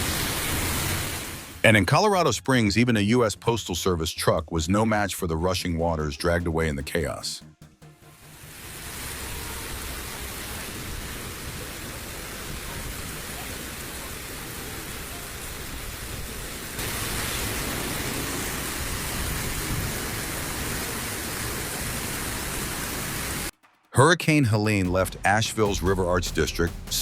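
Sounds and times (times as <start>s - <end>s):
rushing storm water: 0.0s - 1.6s, 8.3s - 23.5s.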